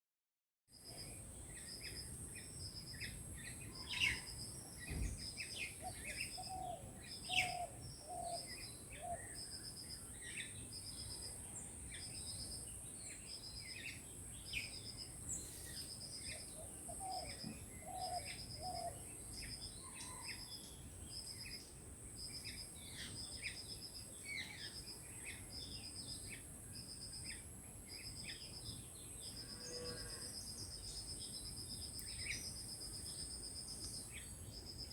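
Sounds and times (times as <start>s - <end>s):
small birds chirping: 0.8s - 29.4s, 30.4s - 34.9s
high insect drone: 25.7s - 33.7s.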